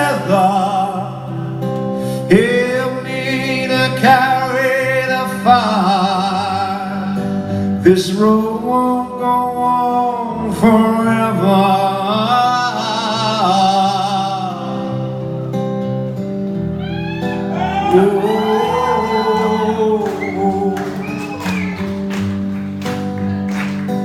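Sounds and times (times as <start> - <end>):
guitar: 0.0 - 24.0
person singing wordless notes: 17.5 - 21.8.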